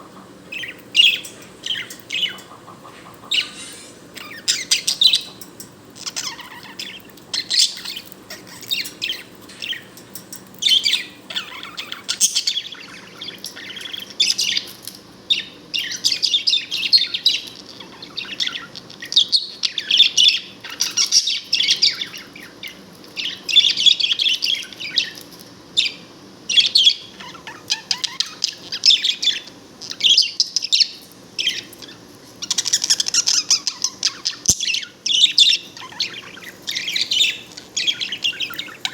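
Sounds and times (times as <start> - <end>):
budgerigar chattering and warbling: 0.0 - 5.5.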